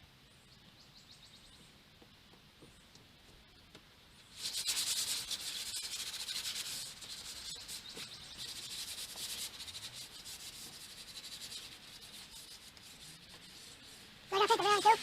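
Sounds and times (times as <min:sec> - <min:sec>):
sandpaper rubbing on wood: 0:04.4 - 0:15.0.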